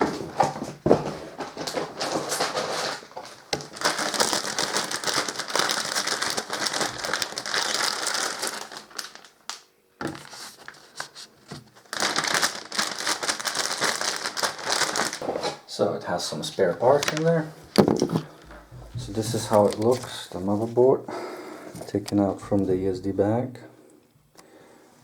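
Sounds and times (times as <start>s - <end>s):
plastic bag crinkling: 1.4s - 15.3s, 16.8s - 20.8s.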